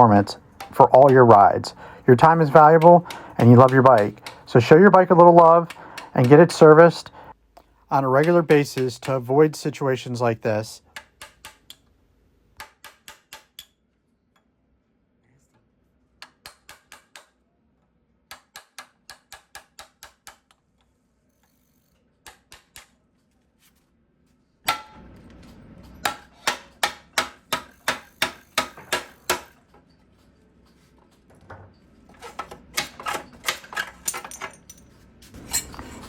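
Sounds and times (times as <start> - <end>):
hammer blows: 0.0 - 6.9.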